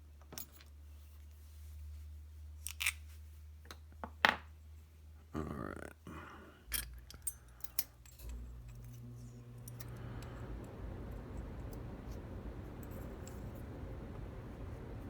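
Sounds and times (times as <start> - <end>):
low steady rumble: 6.4 - 15.0.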